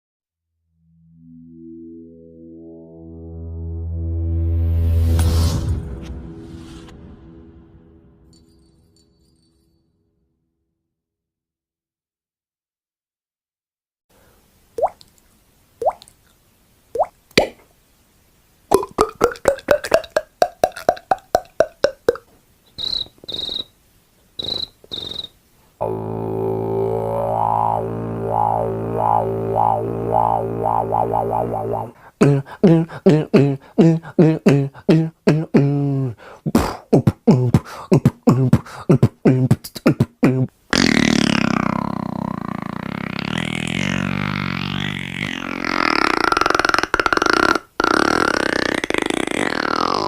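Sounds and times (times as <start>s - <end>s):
man beatboxing: 18.7s - 22.2s, 25.8s - 50.0s.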